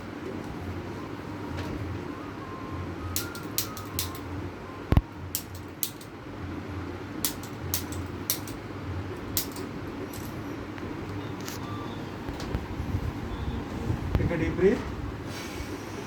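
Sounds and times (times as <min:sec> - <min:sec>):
steady low hum: 0:00.0 - 0:16.0
sharp clicks and taps: 0:07.2 - 0:08.6.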